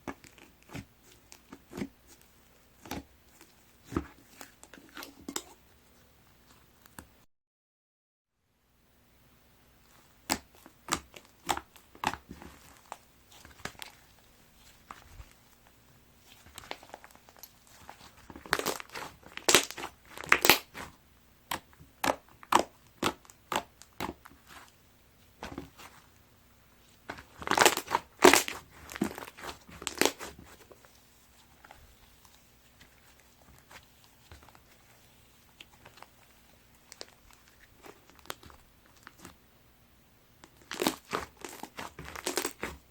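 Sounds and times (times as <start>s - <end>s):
slime squeezed with crunchy crackles: 10.0s - 15.4s, 16.2s - 26.1s, 26.8s - 39.4s, 40.4s - 42.9s.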